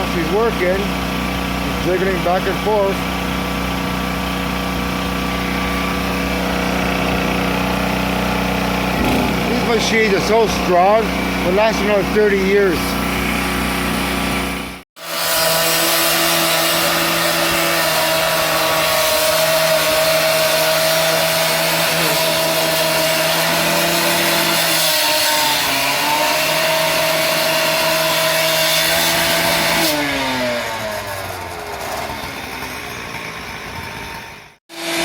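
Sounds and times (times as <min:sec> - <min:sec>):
electric motor running: 0:00.0 - 0:35.0.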